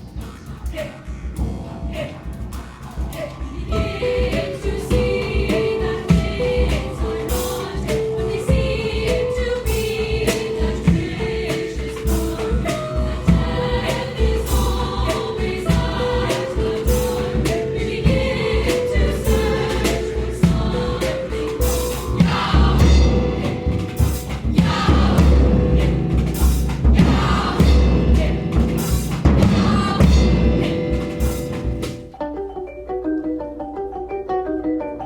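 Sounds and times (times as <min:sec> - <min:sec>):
girls' choir singing: 0:00.0 - 0:32.1
percussion with deep drum hits: 0:00.0 - 0:32.2.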